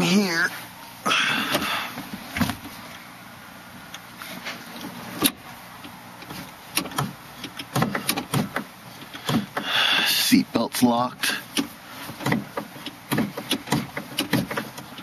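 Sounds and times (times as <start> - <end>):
clicks and knocks in a car: 4.7 - 10.1, 11.4 - 15.0.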